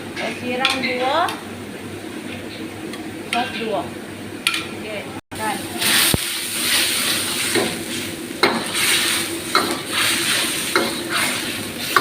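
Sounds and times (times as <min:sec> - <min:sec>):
vegetables sizzling in a pan: 0:05.4 - 0:12.0
spatula scraping and knocking pan: 0:05.9 - 0:12.0.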